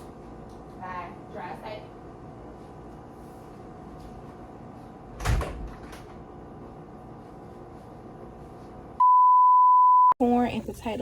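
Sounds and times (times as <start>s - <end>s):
door shutting with a thud: 5.2s - 6.0s.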